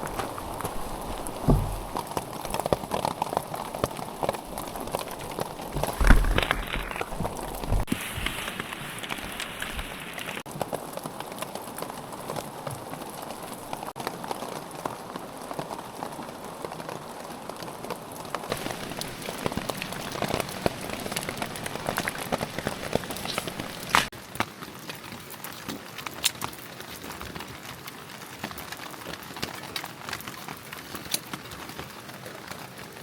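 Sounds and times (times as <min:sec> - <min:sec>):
rain pattering on a tarp: 0:00.0 - 0:33.0.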